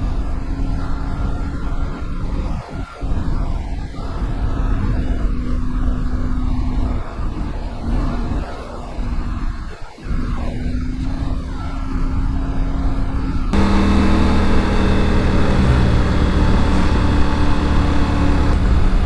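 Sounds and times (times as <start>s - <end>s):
wind and road noise: 11.2s - 19.0s
motorcycle engine running: 13.6s - 19.0s.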